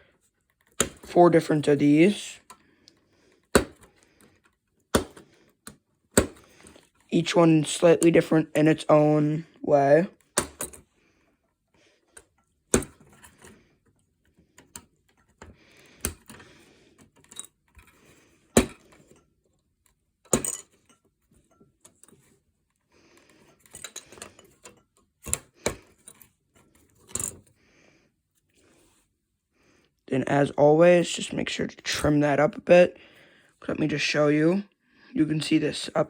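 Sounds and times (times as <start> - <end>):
rustling and scraping of parts: 0.0 - 8.8, 10.2 - 30.0.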